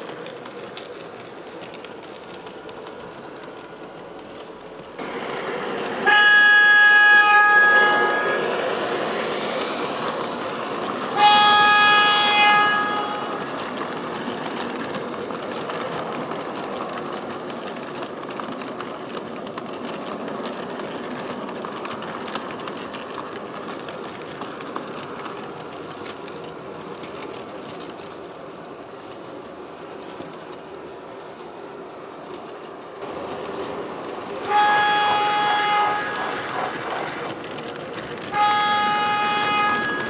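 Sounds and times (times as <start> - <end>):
train running on track: 0.0 - 40.0
model train horn blast: 6.0 - 8.6, 11.1 - 13.4, 34.4 - 36.7, 38.3 - 40.0.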